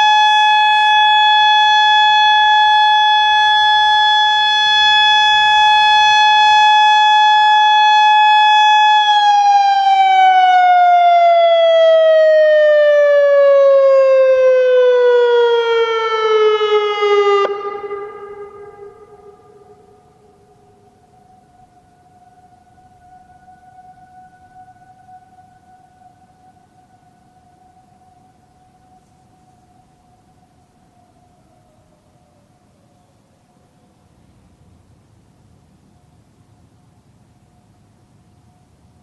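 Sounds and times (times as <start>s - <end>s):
warning siren: 0.0s - 32.8s.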